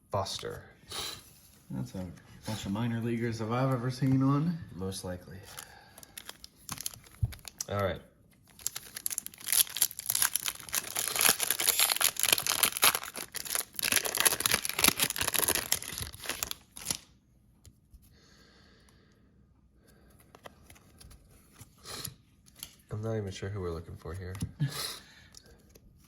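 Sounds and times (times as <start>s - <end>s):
foil wrapper tearing and crinkling: 6.0s - 7.8s, 8.5s - 17.1s.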